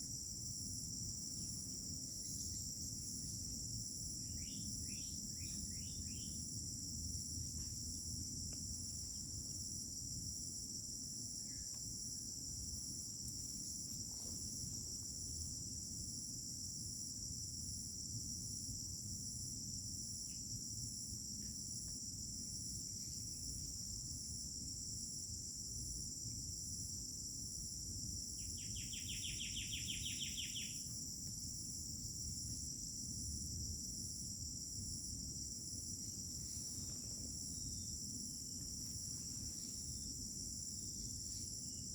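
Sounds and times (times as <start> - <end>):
crickets chirping: 0.0 - 41.9
bird chirps: 28.6 - 30.8.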